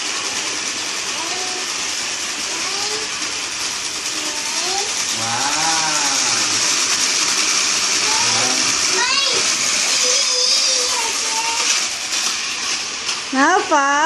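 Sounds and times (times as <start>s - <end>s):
toy car motor whirring: 0.2s - 14.0s
child's voice: 1.1s - 1.7s, 2.4s - 3.2s, 4.1s - 5.3s, 8.0s - 11.9s
voices: 13.3s - 14.0s.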